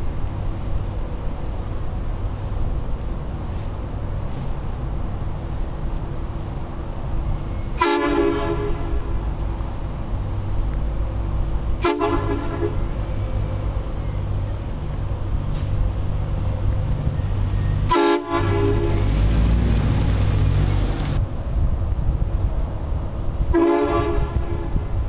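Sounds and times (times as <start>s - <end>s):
steady low rumble: 0.0s - 25.0s
air train horn blasts: 7.8s - 9.3s, 11.8s - 13.0s, 17.9s - 19.4s, 23.5s - 24.9s.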